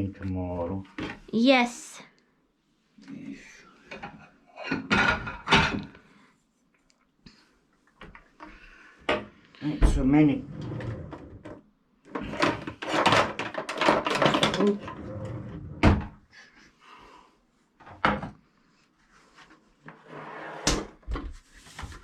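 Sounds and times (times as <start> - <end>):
kitchen items clattering: 3.9 - 6.0, 12.1 - 15.5.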